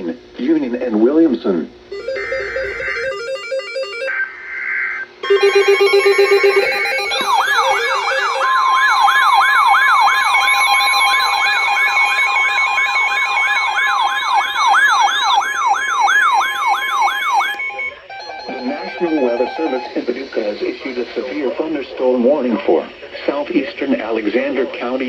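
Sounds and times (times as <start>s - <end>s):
patterned beeping tones: 1.9s - 4.1s, 5.2s - 21.2s
steady alert tone: 1.9s - 4.1s, 5.2s - 15.7s, 17.5s - 20.6s
electronic siren warble: 1.9s - 4.3s, 5.2s - 21.0s.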